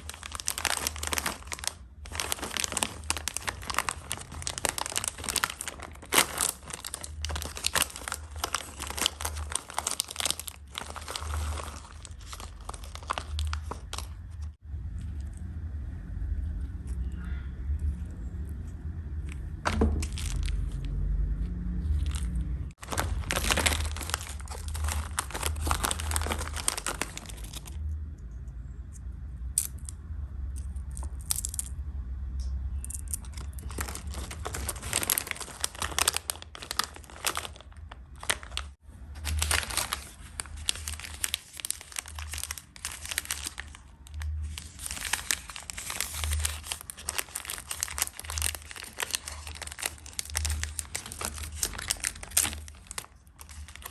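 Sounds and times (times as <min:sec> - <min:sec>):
plastic wrappers tearing and crinkling: 0:00.0 - 0:14.6, 0:19.6 - 0:21.1, 0:21.8 - 0:27.8, 0:33.0 - 0:53.9.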